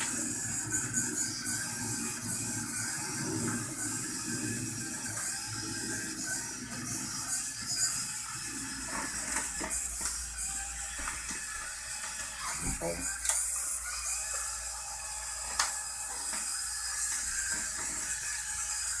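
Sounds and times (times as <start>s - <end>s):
small gear motors whirring: 0.0s - 19.0s.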